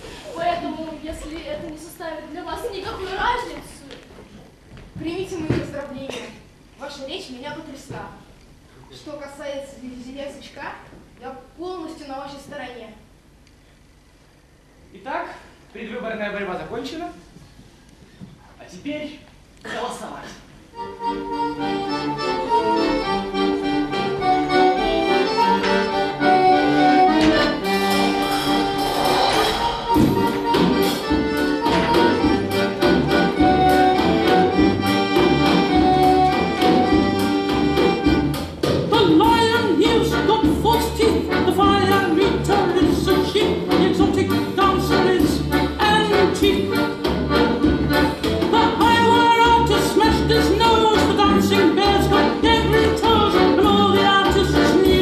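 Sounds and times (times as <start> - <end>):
instrumental music: 20.7 - 55.0
steady bass accompaniment: 20.7 - 55.0.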